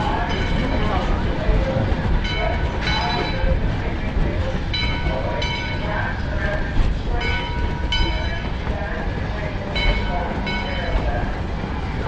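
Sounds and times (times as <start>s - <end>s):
train rumbling: 0.0s - 12.0s.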